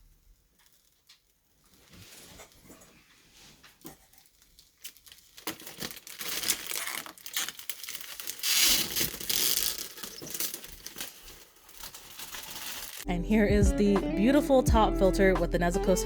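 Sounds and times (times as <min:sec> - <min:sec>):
plastic wrapping crinkling and tearing: 0:00.0 - 0:02.8, 0:03.6 - 0:13.1.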